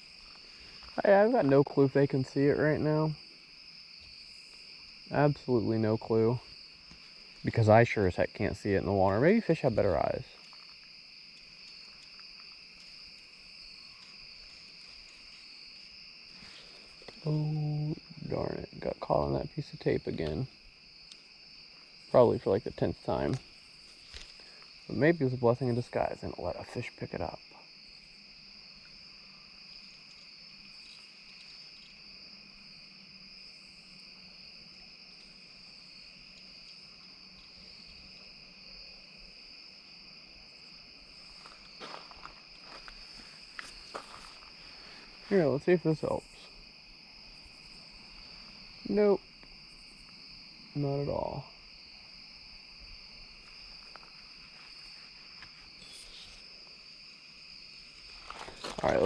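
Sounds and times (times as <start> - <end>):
crickets trilling: 0.0 - 59.0
faint ticks: 20.2 - 21.3.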